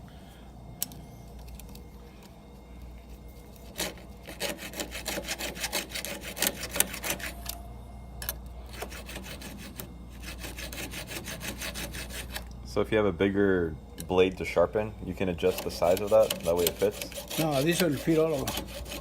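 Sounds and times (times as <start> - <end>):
file rasping on chainsaw chain: 3.8 - 7.3, 8.7 - 12.4, 15.4 - 19.0.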